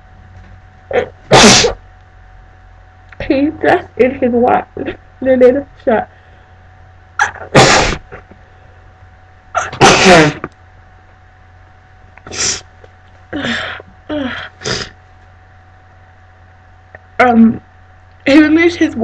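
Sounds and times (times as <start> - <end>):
woman sneezing: 1.3 - 1.8, 7.2 - 8.2, 9.6 - 10.5.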